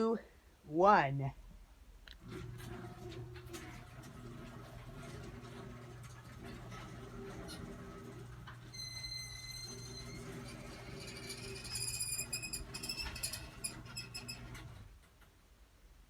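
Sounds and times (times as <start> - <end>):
garage door opener motor running: 2.2 - 15.1
door squeaking: 6.8 - 15.0.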